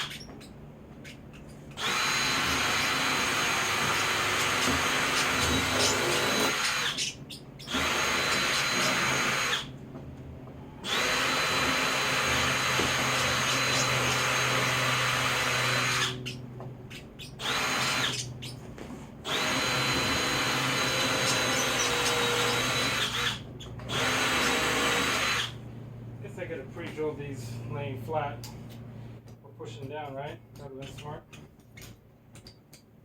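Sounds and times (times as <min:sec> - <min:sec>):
power drill drilling wood: 0:01.8 - 0:09.7, 0:10.8 - 0:16.3, 0:17.4 - 0:18.2, 0:19.2 - 0:25.6.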